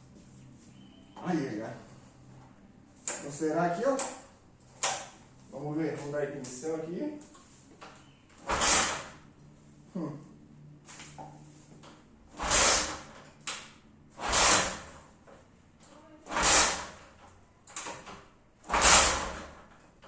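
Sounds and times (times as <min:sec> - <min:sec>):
motorcycle engine cranking: 0:12.3 - 0:13.6, 0:14.2 - 0:15.0, 0:16.2 - 0:20.0.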